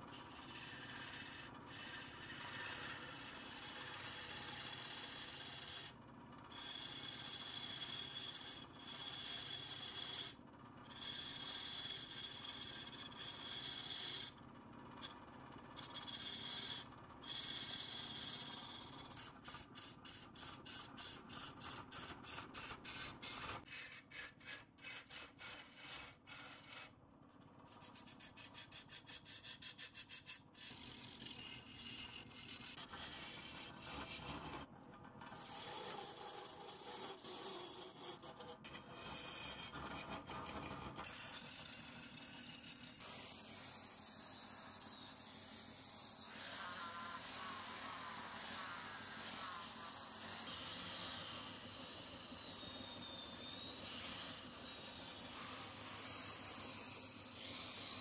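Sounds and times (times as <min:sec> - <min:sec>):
tool scraping wood on lathe: 0:00.3 - 0:05.9, 0:06.5 - 0:14.3, 0:15.8 - 0:26.9, 0:27.7 - 0:58.0
lathe high whine: 0:46.2 - 0:58.0.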